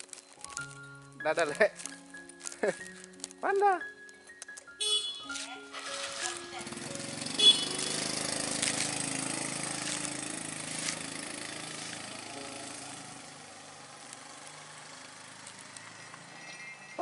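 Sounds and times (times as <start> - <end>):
vehicle engine driving off: 5.7 - 17.0.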